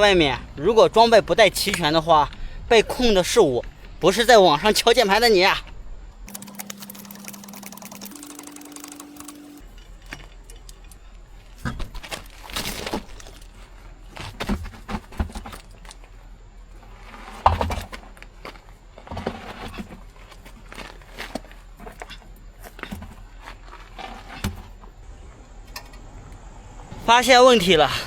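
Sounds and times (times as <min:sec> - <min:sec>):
metal tools and parts clinking: 0:06.3 - 0:11.6.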